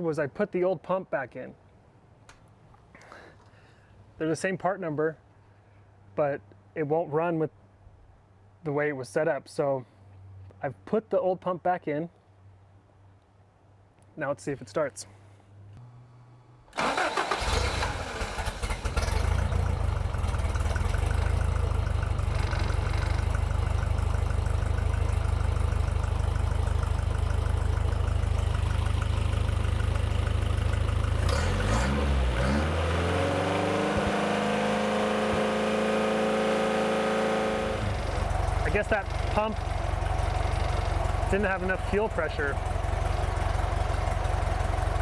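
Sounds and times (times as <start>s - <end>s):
car engine cranking and running: 16.7s - 45.0s.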